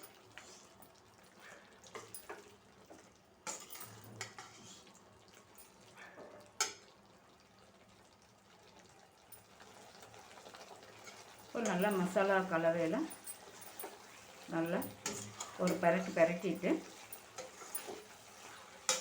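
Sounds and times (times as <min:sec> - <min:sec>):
spoon scraping a cooking pan: 0:00.0 - 0:00.8, 0:03.5 - 0:05.0, 0:10.9 - 0:19.0.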